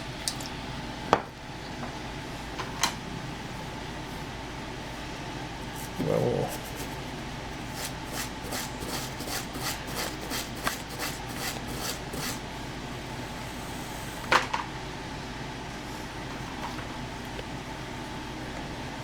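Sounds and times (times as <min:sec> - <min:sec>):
scrubbing rust off metal: 0:05.8 - 0:12.4.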